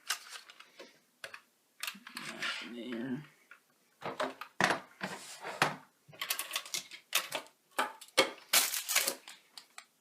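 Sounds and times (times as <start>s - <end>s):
packaging and parts clicking: 6.2s - 9.9s.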